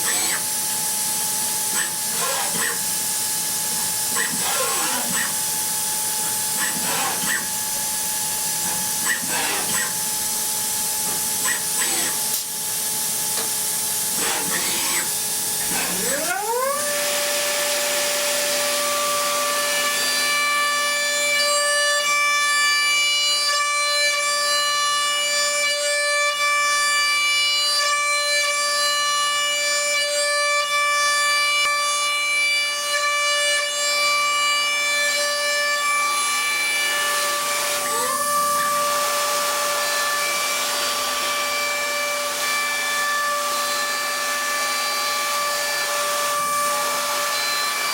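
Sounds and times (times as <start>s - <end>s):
milling spindle high whine: 0.0s - 12.4s.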